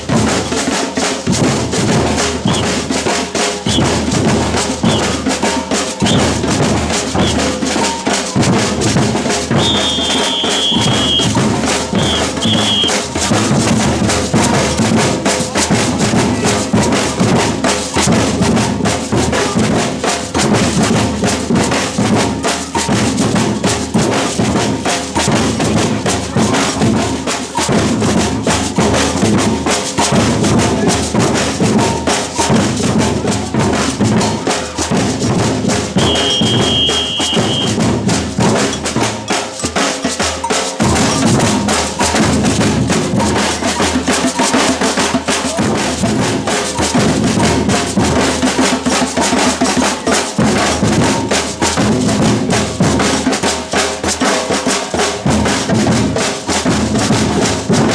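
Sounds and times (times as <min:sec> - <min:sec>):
samba percussion ensemble: 0:00.0 - 0:57.9
high whistle blasts: 0:09.6 - 0:11.4, 0:12.0 - 0:13.0, 0:36.0 - 0:37.8.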